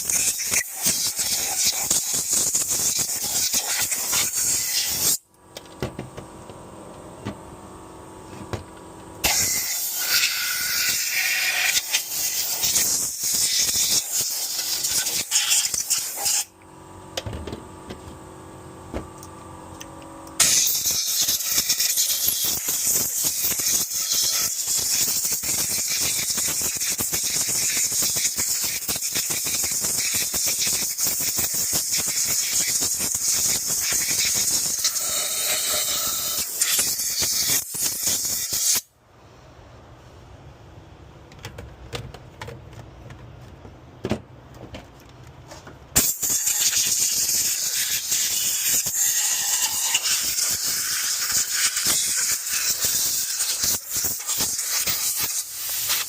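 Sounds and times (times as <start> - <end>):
compressed air gun hissing: 0.0 - 5.2, 9.2 - 16.5, 20.4 - 38.9, 46.0 - 56.0.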